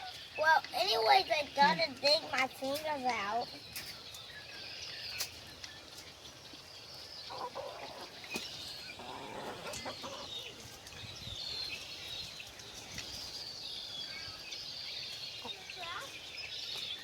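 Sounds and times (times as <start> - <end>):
hens clucking: 5.2 - 11.0.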